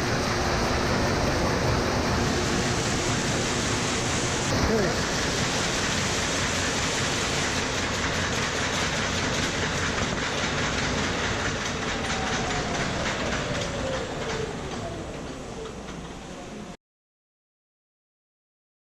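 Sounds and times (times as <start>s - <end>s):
machine clattering and clicking: 5.8s - 15.4s.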